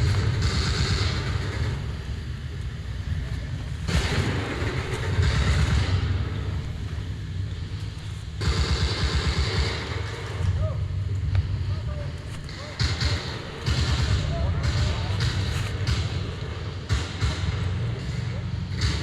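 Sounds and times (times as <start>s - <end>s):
low rumble: 0.0s - 19.0s.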